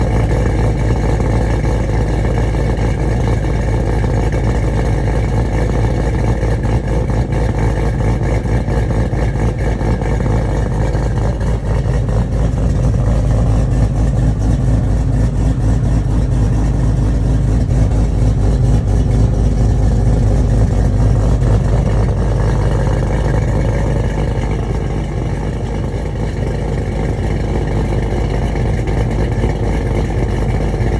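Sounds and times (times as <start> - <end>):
deep engine exhaust note: 0.0 - 30.9.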